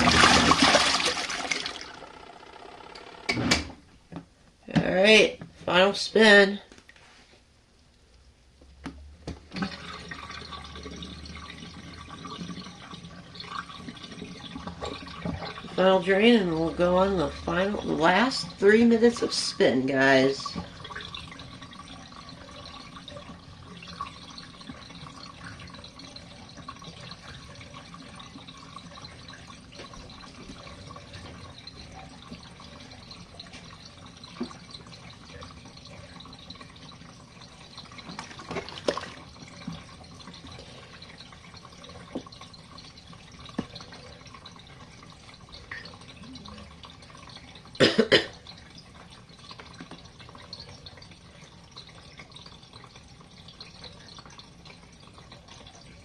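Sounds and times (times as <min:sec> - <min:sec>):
water trickling and dripping: 0:07.8 - 0:56.0.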